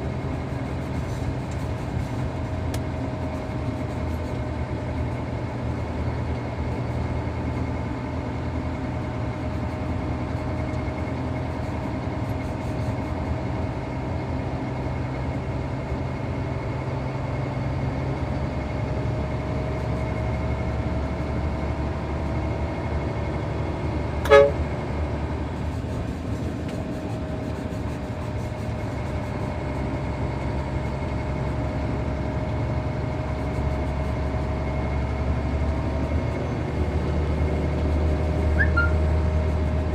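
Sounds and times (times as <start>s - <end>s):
diesel engine under load: 0.0s - 39.9s
short sharp toot: 24.2s - 24.6s, 38.5s - 39.0s.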